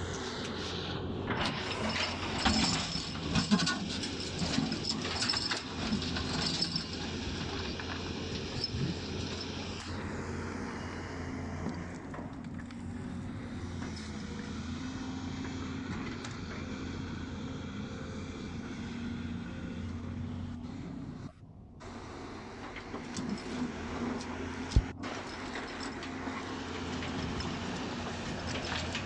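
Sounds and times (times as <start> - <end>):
excavator diesel engine droning: 0.0 - 29.0.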